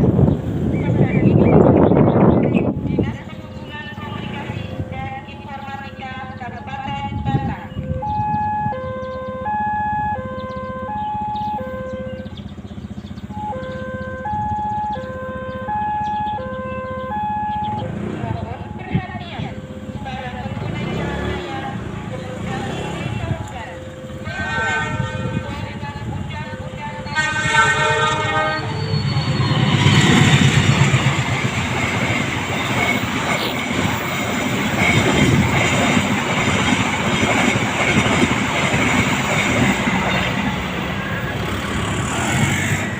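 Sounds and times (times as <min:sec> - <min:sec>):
train rushing past: 0:00.0 - 0:07.5, 0:17.1 - 0:42.9
wheels rumbling on rails: 0:00.0 - 0:42.9
level crossing two-tone alarm: 0:07.7 - 0:12.1, 0:13.2 - 0:31.3
train horn chord: 0:24.4 - 0:30.7.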